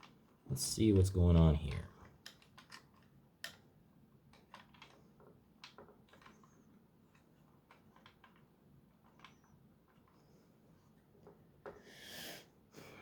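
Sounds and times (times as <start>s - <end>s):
plastic parts clicking and tapping: 2.0s - 10.3s.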